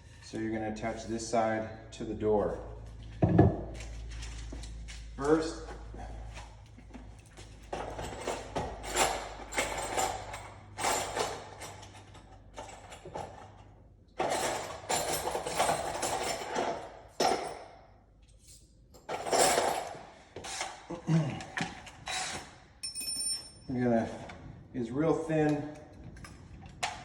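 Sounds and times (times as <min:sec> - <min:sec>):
small metal tools clinking: 0:22.8 - 0:23.8.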